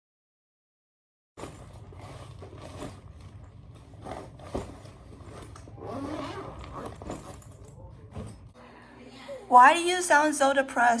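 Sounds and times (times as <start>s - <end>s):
rustling handling noise: 1.4s - 8.6s.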